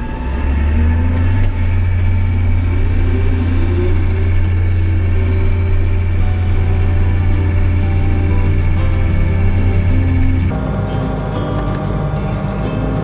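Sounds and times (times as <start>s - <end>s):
diesel engine deep hum: 0.0s - 13.0s
tone rising in pitch: 0.0s - 13.0s.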